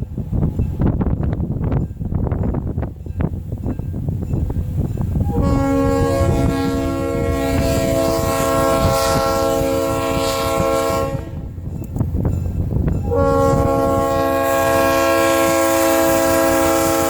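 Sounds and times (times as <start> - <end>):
locomotive air horn blast: 5.2 - 11.5, 13.0 - 17.0.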